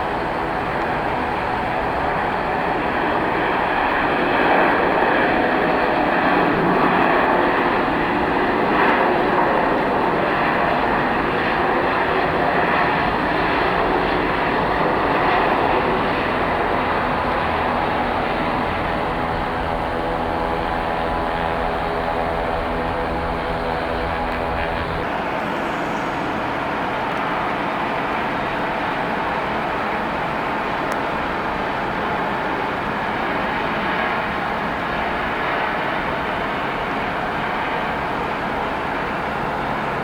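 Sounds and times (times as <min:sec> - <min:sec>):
even humming tones: 0:00.0 - 0:27.6
airliner engines running: 0:00.0 - 0:40.0.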